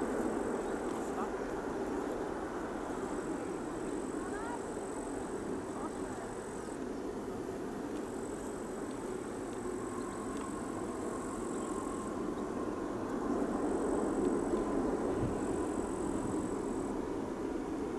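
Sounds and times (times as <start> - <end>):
distant jet engines: 0.0 - 17.9
faint engine whine: 0.0 - 17.9.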